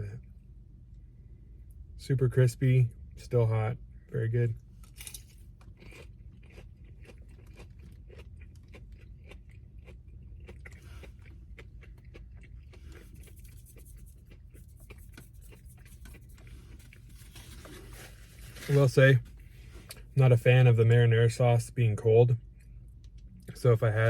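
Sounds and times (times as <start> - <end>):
steady low hum: 0.0 - 24.0
chewing crunches and mouth clicks: 4.8 - 20.2, 22.4 - 23.6.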